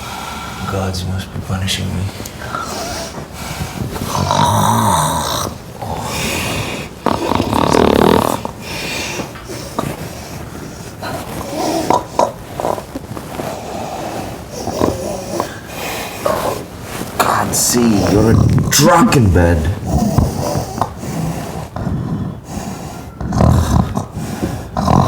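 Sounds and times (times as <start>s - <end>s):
person snoring loudly: 4.1s - 8.7s, 19.5s - 22.5s, 23.2s - 25.0s.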